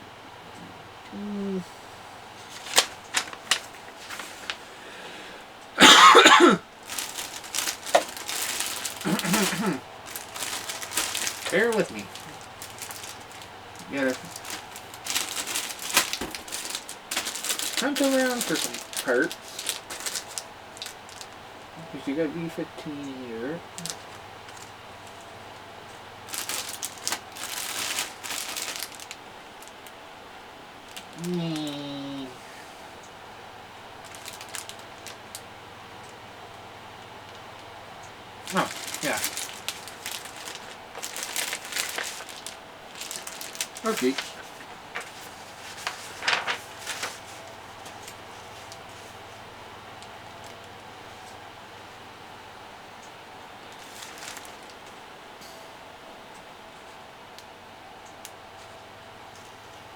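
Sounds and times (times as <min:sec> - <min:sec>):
rustling: 0:00.5 - 0:05.0, 0:06.6 - 0:22.1, 0:23.6 - 0:29.9, 0:34.0 - 0:35.4, 0:38.4 - 0:51.4, 0:53.6 - 0:55.0
plastic bags crinkling: 0:02.3 - 0:04.8, 0:05.8 - 0:21.5, 0:23.6 - 0:29.9, 0:30.9 - 0:31.8, 0:34.0 - 0:35.5, 0:38.4 - 0:51.3, 0:53.7 - 0:54.9
person coughing loudly: 0:05.8 - 0:06.6, 0:09.0 - 0:09.8.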